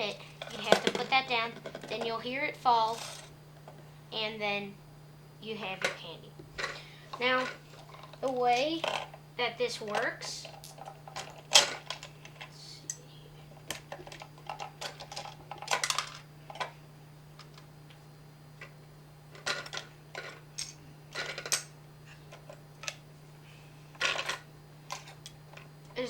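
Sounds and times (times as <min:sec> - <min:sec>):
faint low hum: 0:00.0 - 0:26.0
plastic pieces clicking and knocking: 0:13.7 - 0:16.7, 0:19.4 - 0:21.7.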